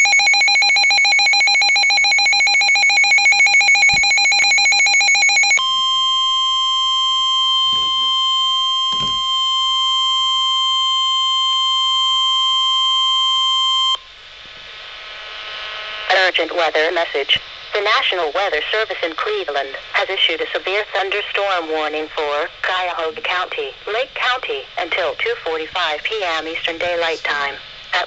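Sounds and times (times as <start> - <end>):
warbling two-tone alert signal: 0.0 - 9.5
steady single-pitch alarm tone: 0.0 - 14.1.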